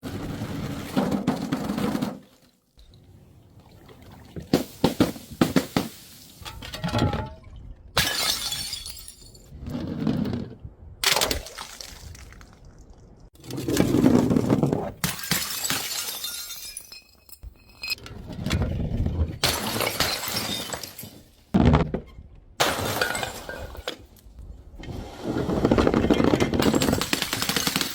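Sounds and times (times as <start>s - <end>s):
glass bottles shattering: 8.0s - 9.5s, 15.0s - 18.0s, 19.4s - 21.4s, 22.6s - 24.0s
glass clattering: 15.1s - 18.0s.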